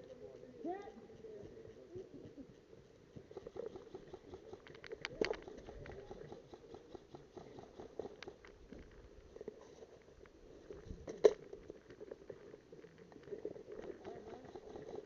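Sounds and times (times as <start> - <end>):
faint clicking and crackling: 1.7 - 15.0.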